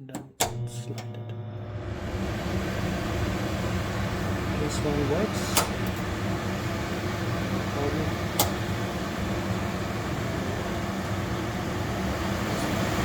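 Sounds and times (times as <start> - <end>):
switch click: 0.0 - 1.2, 5.5 - 6.0, 8.3 - 8.6
range hood fan humming: 0.0 - 13.0.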